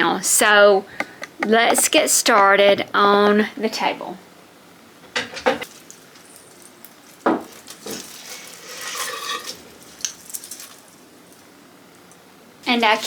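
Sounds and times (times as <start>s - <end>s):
knock on table: 1.0s - 1.9s
rustling scrape: 6.2s - 10.9s.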